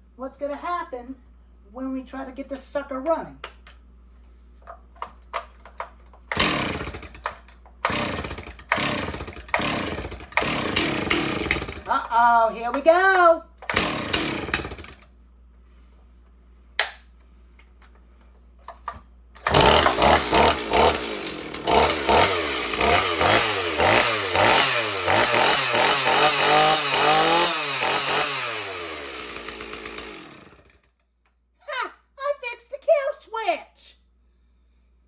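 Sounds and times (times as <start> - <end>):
chainsaw revving: 6.3 - 13.0, 13.6 - 15.0, 19.4 - 30.9.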